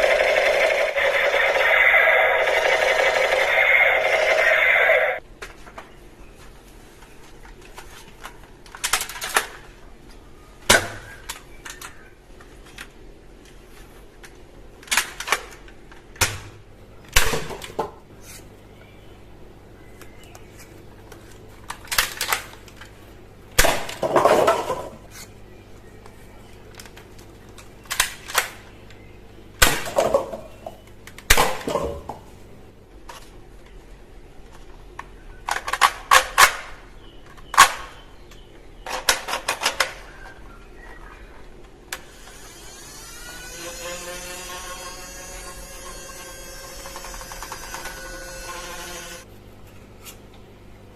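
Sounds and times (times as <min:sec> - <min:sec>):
plastic toy guns clicking: 0:08.2 - 0:09.6, 0:14.8 - 0:16.4, 0:35.5 - 0:36.8, 0:38.9 - 0:40.0.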